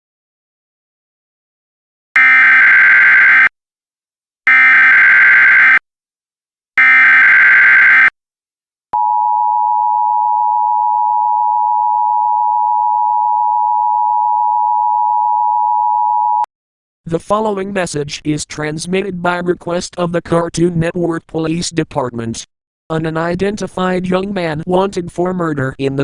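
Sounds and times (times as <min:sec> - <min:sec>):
digital data tone bursts: 0:04.5 - 0:05.8, 0:06.8 - 0:08.1
two-tone attention signal: 0:06.8 - 0:08.1.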